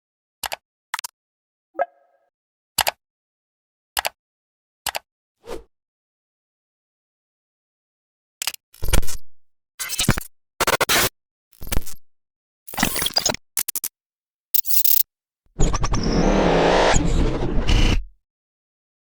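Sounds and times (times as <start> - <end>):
short sharp clicks: 14.6 - 15.0.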